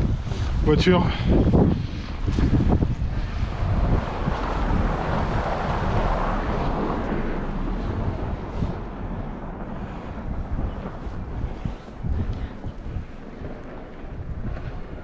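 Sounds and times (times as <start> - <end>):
wind rumbling on microphone: 0.0 - 15.0
car driving past on snow: 1.8 - 12.0.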